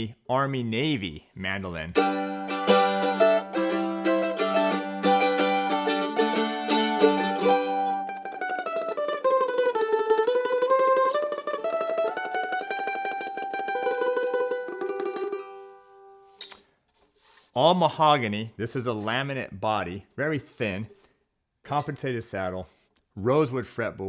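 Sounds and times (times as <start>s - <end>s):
mandolin playing: 2.0s - 16.5s.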